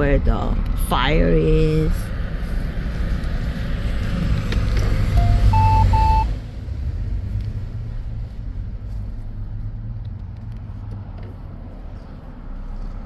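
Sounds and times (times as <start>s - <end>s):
car engine and road noise: 0.0s - 13.0s
short electronic beeps: 5.2s - 6.3s.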